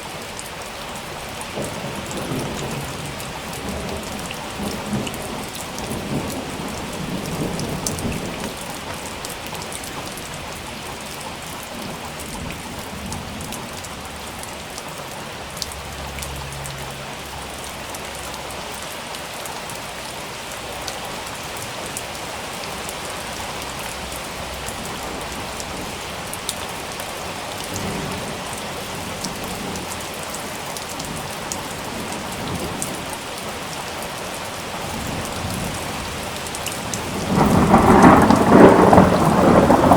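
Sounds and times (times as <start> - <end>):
steady rain falling: 0.0 - 39.9
thunder rumbling: 1.6 - 14.3, 34.8 - 39.9.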